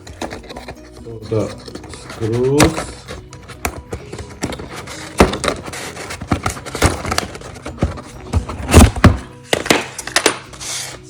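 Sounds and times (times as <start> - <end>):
packaging rustling: 0.0 - 11.0
knocks and thuds: 3.6 - 9.9.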